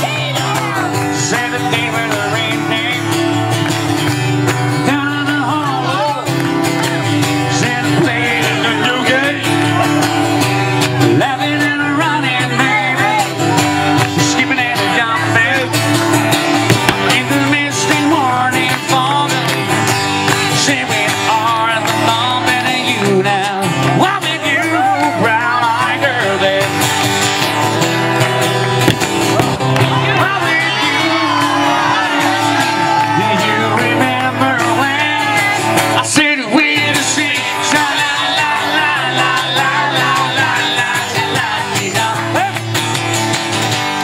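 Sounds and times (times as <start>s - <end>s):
pop-rock song with singing and guitar: 0.0s - 44.0s.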